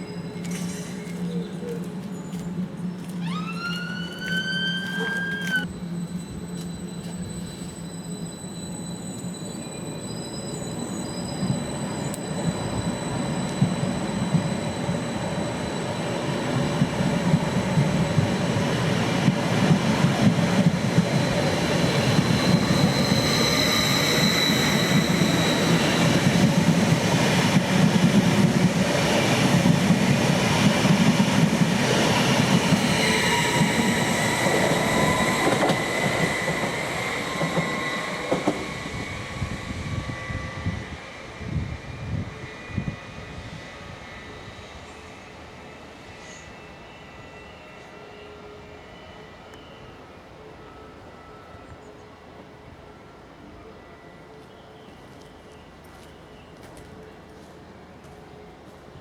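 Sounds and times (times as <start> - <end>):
train rumbling on track: 0.0 - 50.4
thin metallic squeal: 3.2 - 16.1, 21.5 - 26.2.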